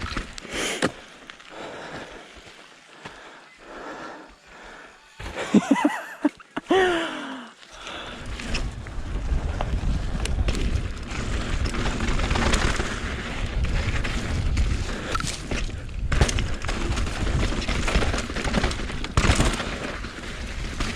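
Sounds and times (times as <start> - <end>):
bike clattering on rough trail: 0.0 - 20.9
wind buffeting microphone: 8.0 - 19.1.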